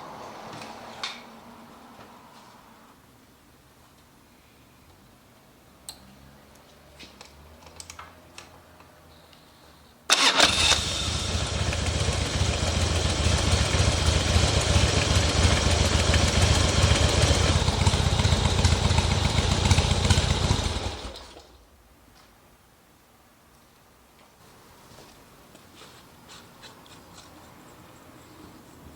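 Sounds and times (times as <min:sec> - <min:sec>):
motorcycle engine starting and running: 0:10.1 - 0:21.6.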